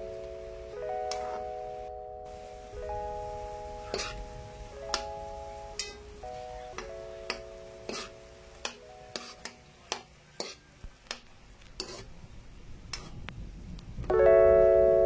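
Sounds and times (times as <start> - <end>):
quiet music chord: 0.0 - 9.9, 14.1 - 15.0
soft clicks and scrapes: 12.9 - 13.4.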